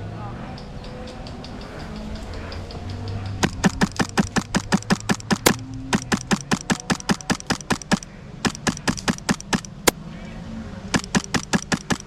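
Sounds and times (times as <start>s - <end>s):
airsoft gun rapid fire: 3.4s - 10.0s, 10.9s - 12.0s.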